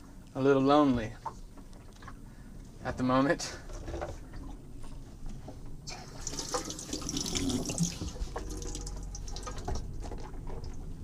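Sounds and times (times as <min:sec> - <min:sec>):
tap water splashing into sink: 0:06.2 - 0:09.9.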